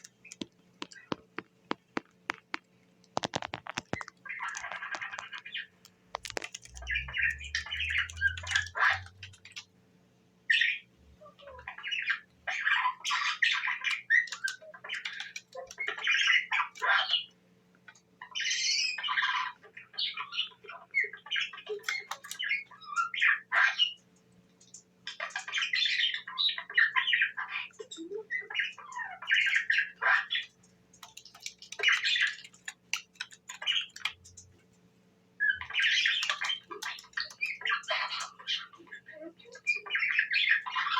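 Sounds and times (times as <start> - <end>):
budgerigar chattering and squawking: 3.2 - 9.6, 10.5 - 17.4, 25.1 - 34.4, 35.4 - 40.9.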